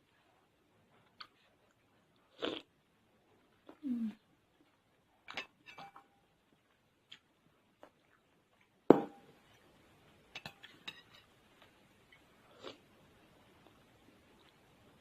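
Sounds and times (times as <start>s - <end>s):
tableware clinks and knocks: 5.3s - 6.1s.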